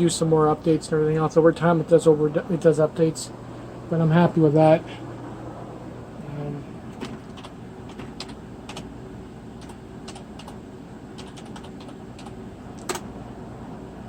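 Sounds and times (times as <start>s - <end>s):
computer keyboard keys clicking: 7.0s - 8.9s, 9.6s - 10.6s, 11.2s - 13.0s.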